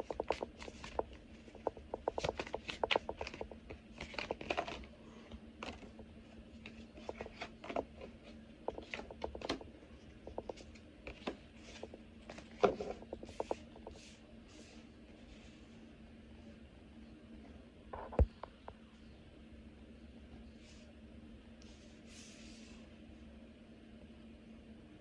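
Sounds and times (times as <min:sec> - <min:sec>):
cards being shuffled: 0:00.0 - 0:04.9.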